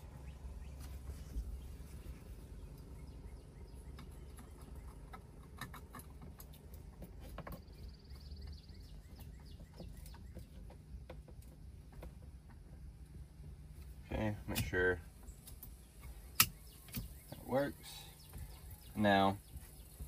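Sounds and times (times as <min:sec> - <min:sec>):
low steady hum: 0:00.0 - 0:20.0.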